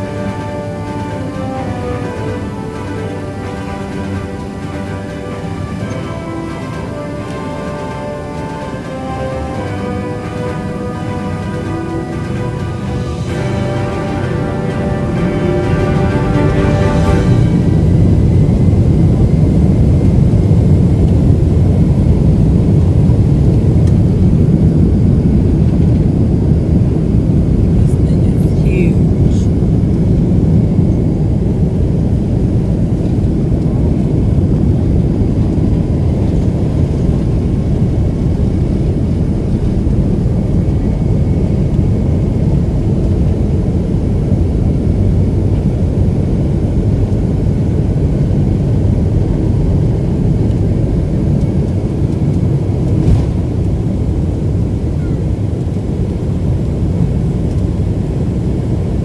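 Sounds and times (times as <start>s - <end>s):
jet engine rumble in cabin: 17.7s - 59.0s.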